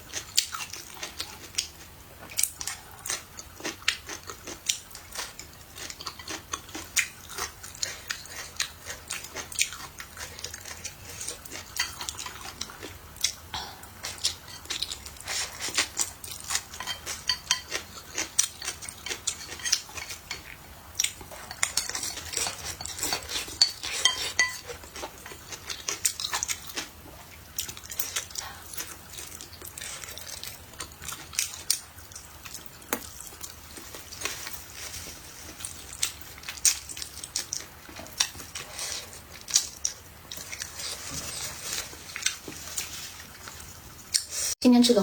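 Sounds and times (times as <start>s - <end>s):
wet stirring and eating: 0.1s - 44.6s
utensils scraping against bowl: 14.4s - 20.6s, 21.3s - 25.1s.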